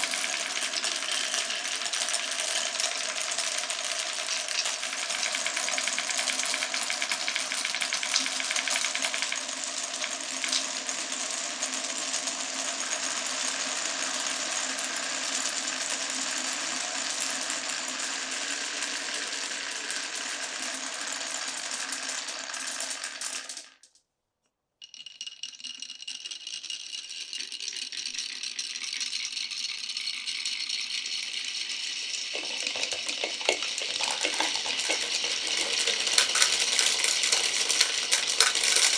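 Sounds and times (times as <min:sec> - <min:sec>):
marbles rattling on wooden run: 0:00.0 - 0:02.9, 0:24.8 - 0:29.2, 0:32.2 - 0:38.9.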